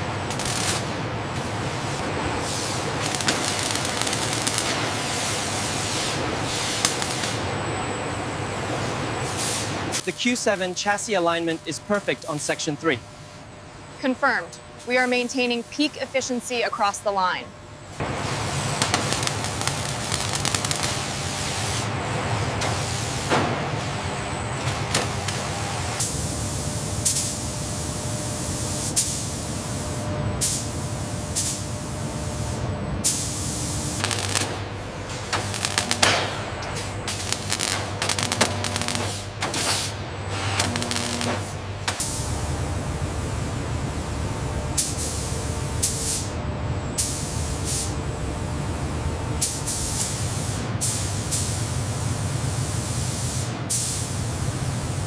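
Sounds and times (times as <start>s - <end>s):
machinery low hum: 0.0s - 55.0s
air hiss bursts: 9.2s - 10.0s, 26.0s - 27.4s, 28.8s - 31.7s, 32.4s - 34.6s, 35.3s - 42.3s, 44.8s - 46.3s, 47.0s - 47.9s, 49.4s - 51.6s, 52.8s - 54.2s.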